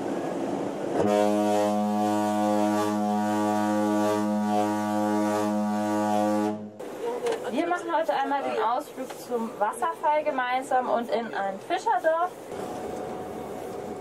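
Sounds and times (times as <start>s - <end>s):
deep ship's horn blast: 1.0s - 6.8s.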